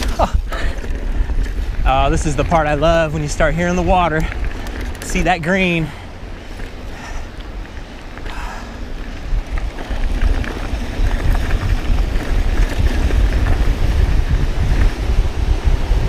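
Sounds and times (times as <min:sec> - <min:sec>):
bike tyre rumble: 0:00.0 - 0:16.0
wind buffeting microphone: 0:00.0 - 0:16.0.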